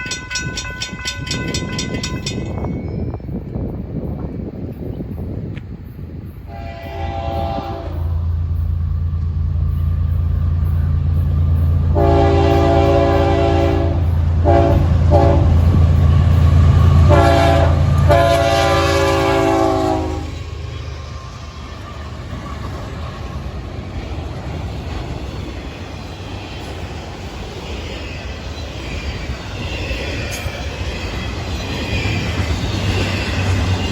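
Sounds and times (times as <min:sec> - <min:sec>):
diesel locomotive engine rumble: 0:00.0 - 0:33.9
locomotive air horn blasts: 0:06.5 - 0:08.3, 0:11.9 - 0:15.8, 0:16.9 - 0:20.4.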